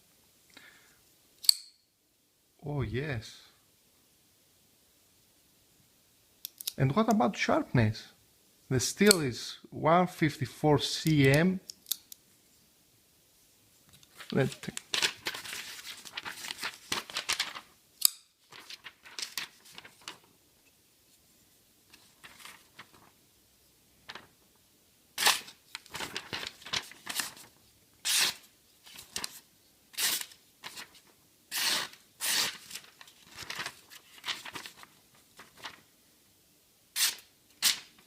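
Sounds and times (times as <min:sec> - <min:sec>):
knife blade slicing paper: 0:25.2 - 0:25.6, 0:28.1 - 0:28.4, 0:30.0 - 0:30.8, 0:31.5 - 0:33.6, 0:37.0 - 0:37.9.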